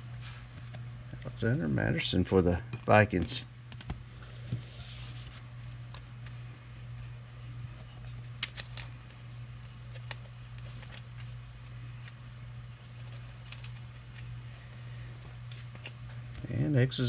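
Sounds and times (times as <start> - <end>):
low steady hum: 0.0 - 17.0
trading cards being shuffled: 3.7 - 6.4, 8.0 - 12.2, 12.9 - 14.3, 15.4 - 16.2.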